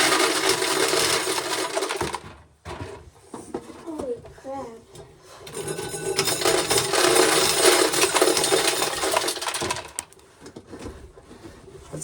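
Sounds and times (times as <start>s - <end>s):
corn sheller working: 0.0s - 2.4s, 5.5s - 10.2s
kernels rattling into metal pail: 0.0s - 2.4s, 5.5s - 10.2s.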